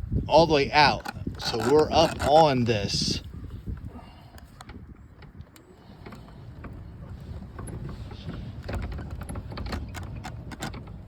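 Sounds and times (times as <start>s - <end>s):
golf cart rumbling: 0.0s - 3.2s, 4.7s - 11.0s
cart clicks and rattles: 0.8s - 2.7s, 7.5s - 11.0s.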